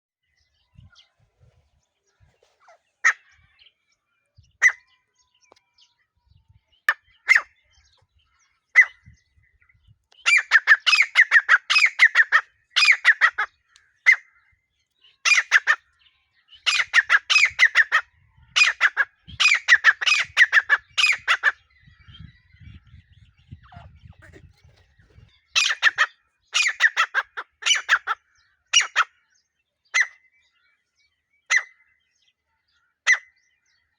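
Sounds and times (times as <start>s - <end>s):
francolin piercing calls: 10.2s - 13.5s, 25.5s - 28.2s.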